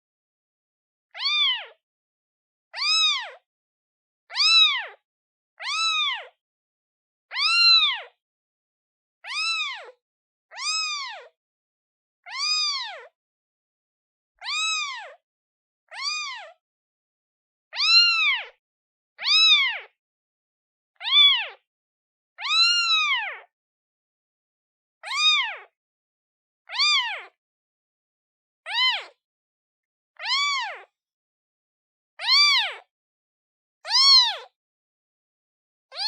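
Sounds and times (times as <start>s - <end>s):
kitten meowing: 1.2s - 1.8s, 2.8s - 3.4s, 4.3s - 5.0s, 5.6s - 6.4s, 7.3s - 8.2s, 9.2s - 11.3s, 12.3s - 13.1s, 14.4s - 15.2s, 15.9s - 16.5s, 17.7s - 18.6s, 19.2s - 19.9s, 21.0s - 21.6s, 22.4s - 23.5s, 25.0s - 25.7s, 26.7s - 27.4s, 28.7s - 29.2s, 30.2s - 30.9s, 32.2s - 32.9s, 33.8s - 34.5s.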